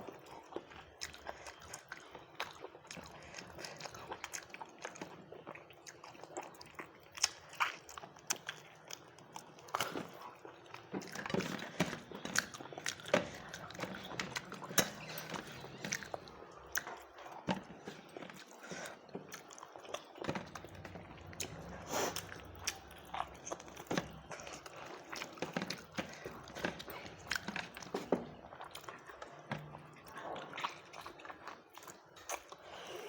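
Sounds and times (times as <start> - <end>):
person chewing rice: 0.0 - 33.0.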